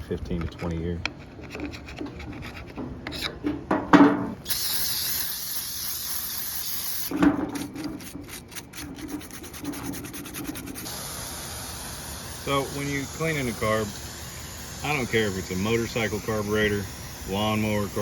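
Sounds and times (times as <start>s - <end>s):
scrubbing strokes: 0.6s - 3.4s, 7.5s - 10.9s
aerosol spray hiss: 4.5s - 7.1s, 10.8s - 18.0s.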